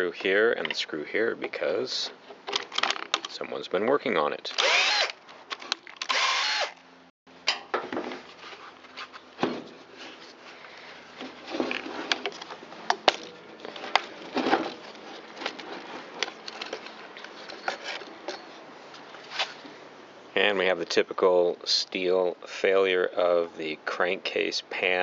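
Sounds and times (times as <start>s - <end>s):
plastic parts and screws clattering: 2.4s - 3.4s, 11.5s - 18.5s
cordless drill whirring: 4.6s - 5.2s, 6.0s - 6.8s.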